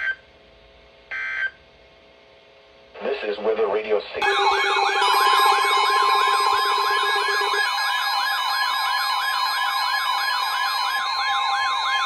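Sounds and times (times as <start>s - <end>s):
low buzz: 4.2s - 9.9s
electronic siren yelping: 4.2s - 12.0s.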